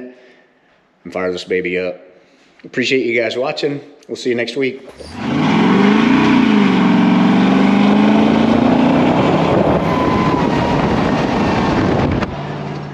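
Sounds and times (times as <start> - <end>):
engine revving: 4.9 - 12.9.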